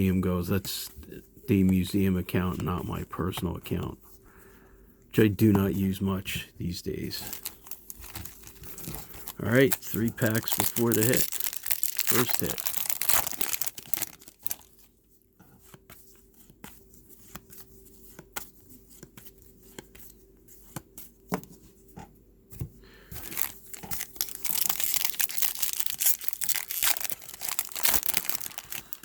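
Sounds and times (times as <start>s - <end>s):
trading cards clicking and rustling: 6.9s - 14.8s, 23.1s - 29.0s
card pack wrapper tearing: 7.2s - 14.8s, 23.2s - 29.0s.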